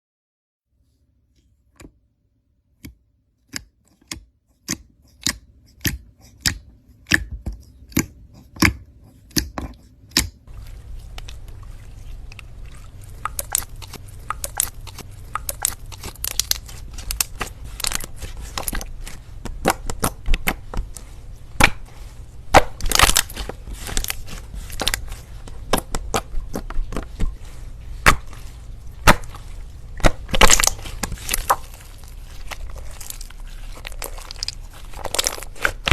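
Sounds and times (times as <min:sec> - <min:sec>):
slime popping and crackling: 0:10.1 - 0:20.8, 0:22.5 - 0:27.2, 0:28.0 - 0:35.9.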